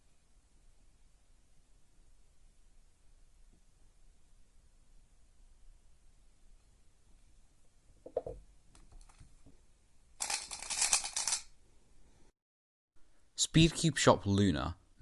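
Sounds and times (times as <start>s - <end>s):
puzzle cube clicking and turning: 10.2s - 11.5s.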